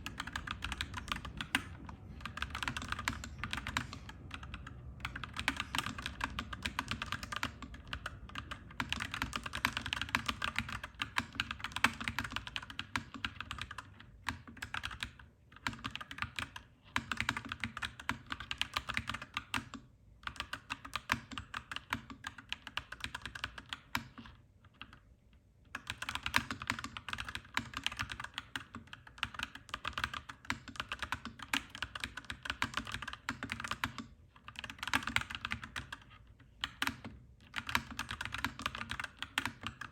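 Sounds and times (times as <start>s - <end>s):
mechanical keyboard typing: 0.0s - 25.0s, 25.7s - 39.9s.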